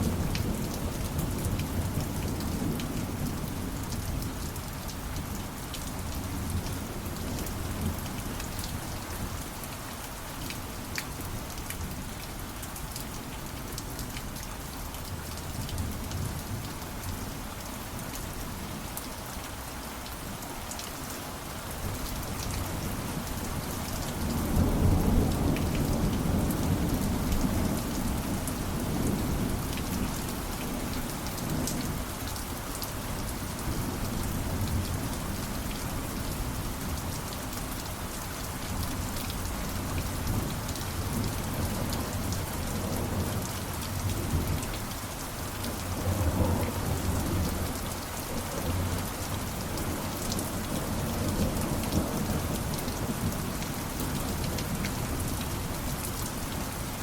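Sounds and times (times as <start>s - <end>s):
heavy rainfall: 0.0s - 57.0s.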